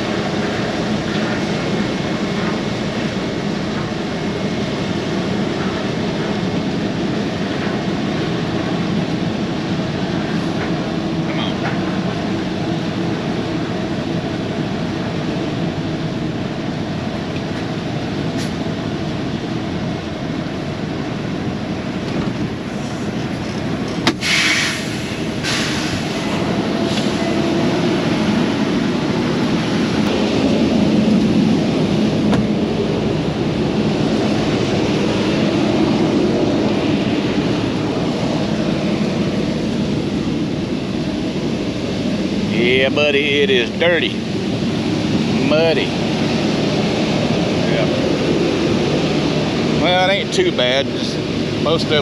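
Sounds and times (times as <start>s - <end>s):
diesel engine idling: 0.0s - 52.0s
air brakes hissing: 18.4s - 18.6s, 22.7s - 23.2s, 24.0s - 27.5s.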